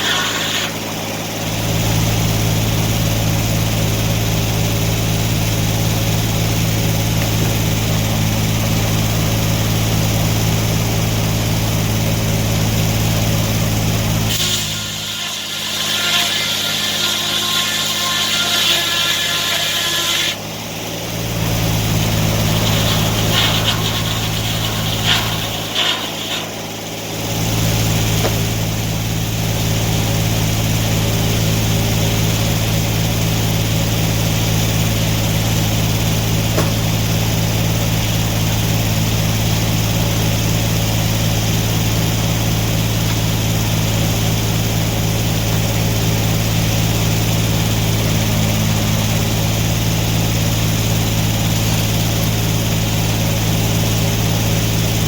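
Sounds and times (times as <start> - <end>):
high rasping noise: 0.0 - 4.0, 14.3 - 31.5
sawmill engine running: 0.0 - 55.0.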